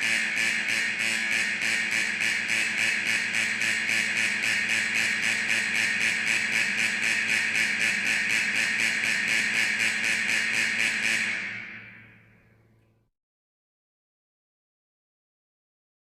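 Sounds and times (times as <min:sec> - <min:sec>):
shrill pulsing alarm ringing: 0:00.0 - 0:12.3.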